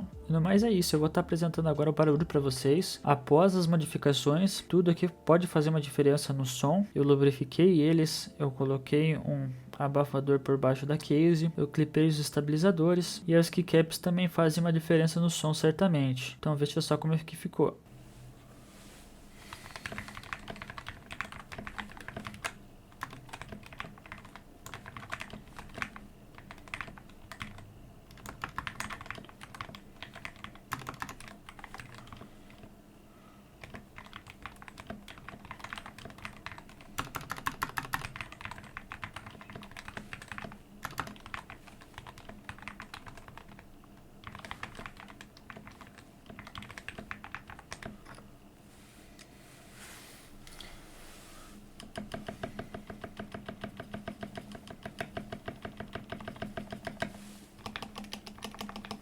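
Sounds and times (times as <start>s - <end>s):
typing on mechanical keyboard: 19.6s - 32.7s, 33.6s - 43.6s, 44.2s - 48.2s, 51.8s - 59.0s.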